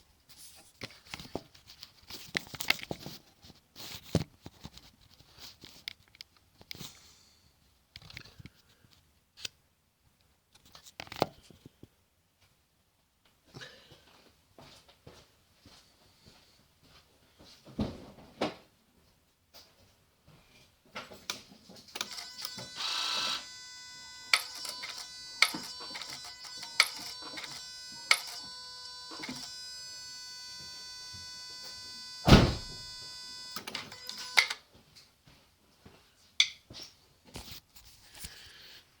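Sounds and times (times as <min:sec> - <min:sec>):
high electronic whine: 0:22.5 - 0:34.2
loud thump: 0:32.2 - 0:32.8.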